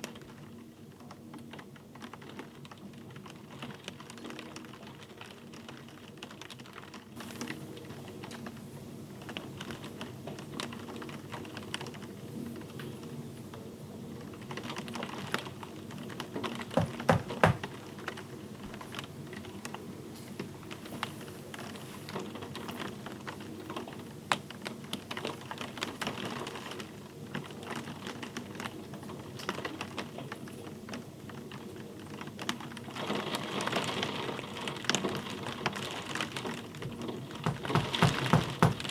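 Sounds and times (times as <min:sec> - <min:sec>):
louder knocks: 0:16.8 - 0:17.8, 0:37.5 - 0:38.9.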